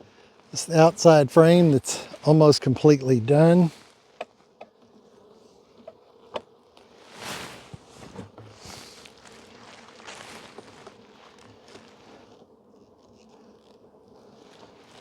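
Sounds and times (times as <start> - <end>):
bees buzzing: 0.6 - 15.0.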